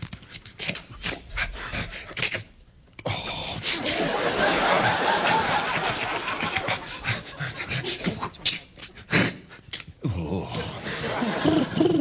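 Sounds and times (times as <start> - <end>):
mouth pops and clicks: 9.7 - 10.0.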